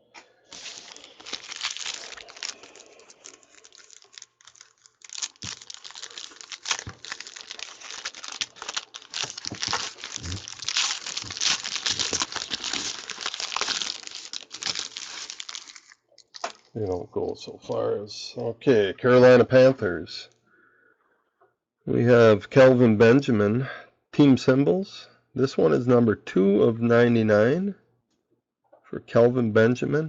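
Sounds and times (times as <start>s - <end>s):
plastic wrapping crinkling: 0.5s - 16.8s.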